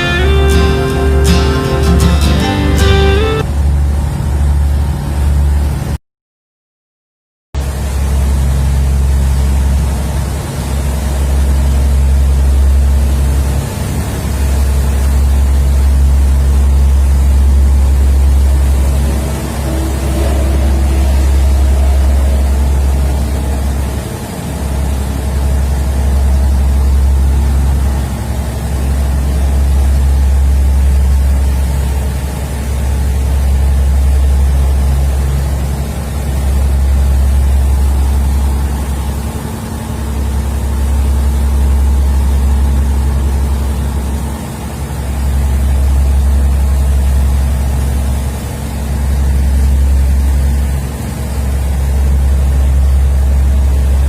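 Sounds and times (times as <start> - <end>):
boat engine droning: 0.0 - 6.0, 7.6 - 54.0.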